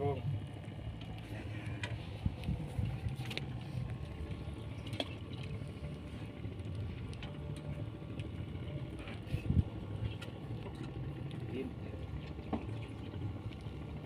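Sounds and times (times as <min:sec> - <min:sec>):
boat engine rumbling: 0:00.0 - 0:14.0.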